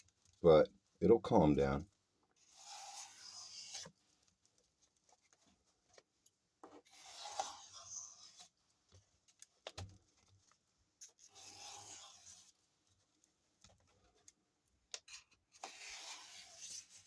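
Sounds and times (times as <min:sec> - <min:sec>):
sandpaper scraping wood: 0:02.4 - 0:03.9, 0:06.9 - 0:08.5, 0:11.3 - 0:12.5, 0:15.6 - 0:17.0.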